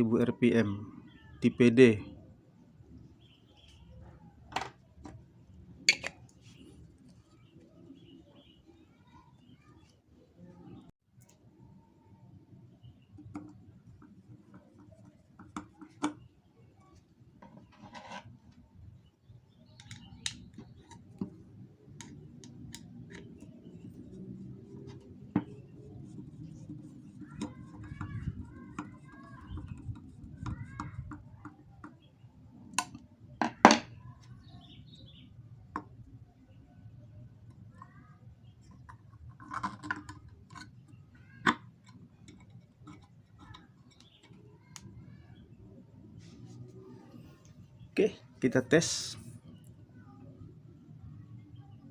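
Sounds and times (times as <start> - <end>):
birds chirping faintly: 0.0 - 51.9
plastic parts clicking and knocking: 4.5 - 5.2, 5.9 - 6.6, 13.1 - 16.3, 19.8 - 34.0, 38.6 - 45.0
plastic parts clicking: 19.8 - 21.4.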